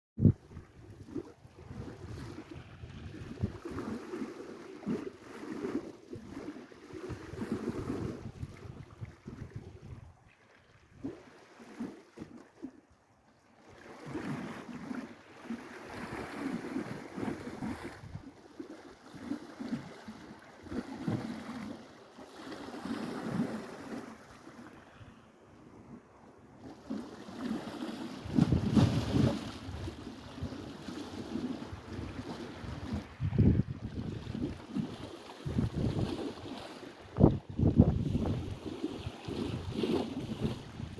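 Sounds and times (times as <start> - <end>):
wind buffeting microphone: 0.2 - 4.0, 6.2 - 10.2, 28.2 - 40.9
sea waves on shore: 0.2 - 40.9.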